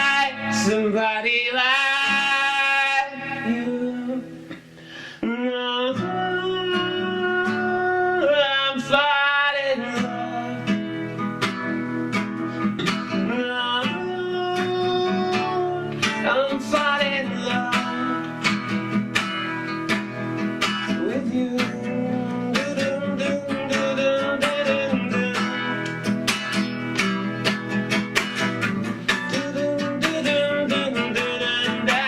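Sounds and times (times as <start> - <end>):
man singing: 0.0 - 4.6, 5.2 - 11.2, 12.8 - 19.2, 20.4 - 26.6, 28.2 - 32.0
acoustic guitar strumming: 0.0 - 32.0.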